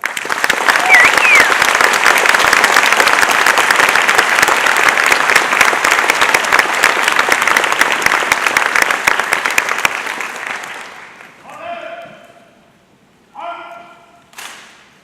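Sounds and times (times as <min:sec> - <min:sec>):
audience applauding: 0:00.0 - 0:11.4.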